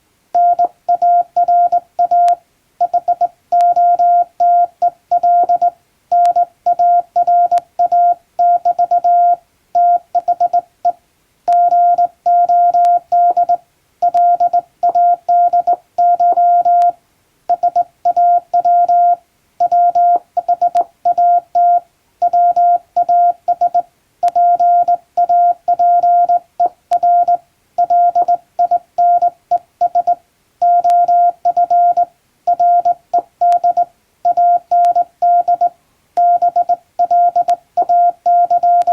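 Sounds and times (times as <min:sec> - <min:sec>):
morse code beeps: 0:00.4 - 0:38.9.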